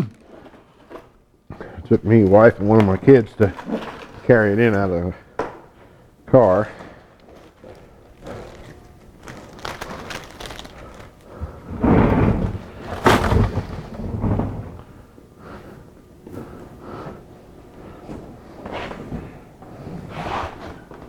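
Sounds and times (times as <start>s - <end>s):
cardboard rustling and scraping: 6.9s - 14.9s
heavy thumps: 9.7s - 15.1s.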